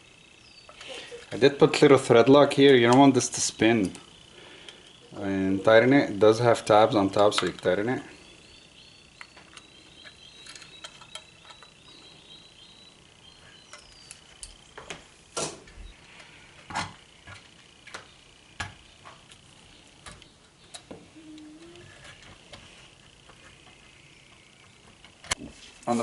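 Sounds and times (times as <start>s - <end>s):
metal lock parts clicking and knocking: 9.2s - 11.8s.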